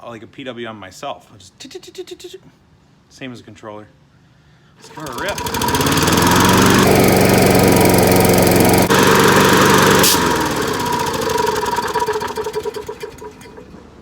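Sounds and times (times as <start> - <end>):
mower engine running hard: 4.8 - 13.9
sharp engine pop: 10.0 - 10.8.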